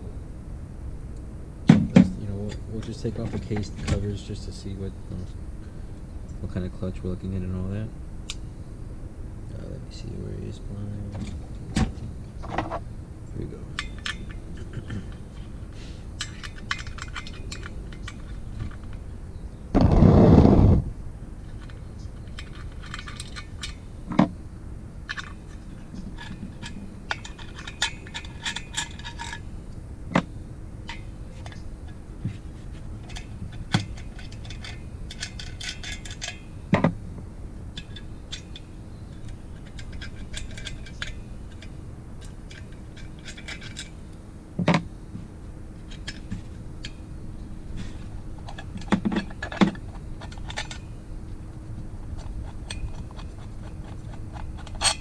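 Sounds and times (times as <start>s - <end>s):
hand tools and metal parts clinking: 1.8s - 4.7s, 13.5s - 19.1s, 21.4s - 24.3s, 25.1s - 29.5s, 30.1s - 36.9s, 37.7s - 44.8s, 45.8s - 55.0s.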